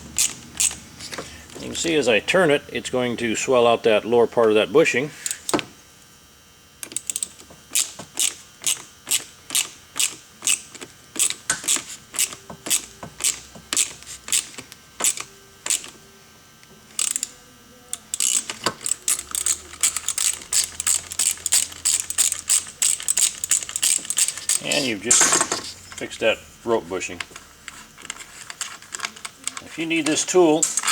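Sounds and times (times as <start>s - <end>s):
hand ratchet clicking: 0.2s - 0.8s, 6.8s - 15.9s, 17.0s - 26.0s, 28.0s - 30.9s.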